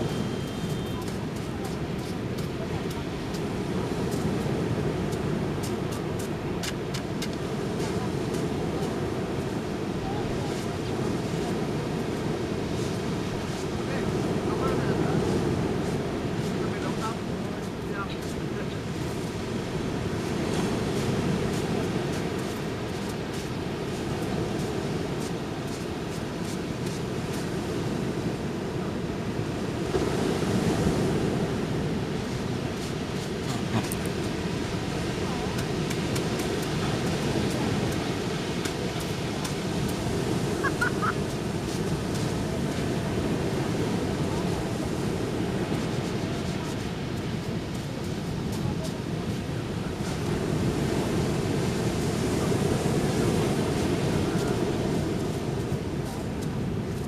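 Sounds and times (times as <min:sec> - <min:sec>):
ocean surf breaking: 0:00.0 - 0:57.0
wind on microphone: 0:00.0 - 0:57.0
footsteps on sand: 0:32.2 - 0:49.1.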